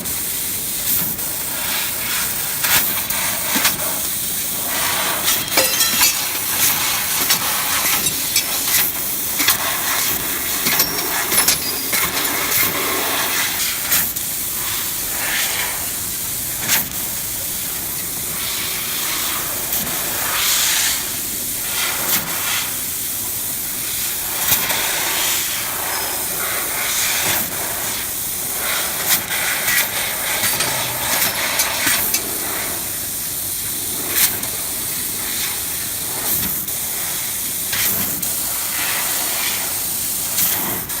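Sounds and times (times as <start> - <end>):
laser cutting head hissing: 1.9 - 14.1.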